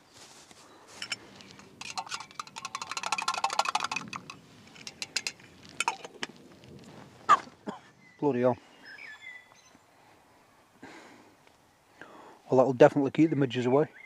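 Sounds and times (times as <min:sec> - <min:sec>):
spoon clinking in mug: 0:01.0 - 0:06.1.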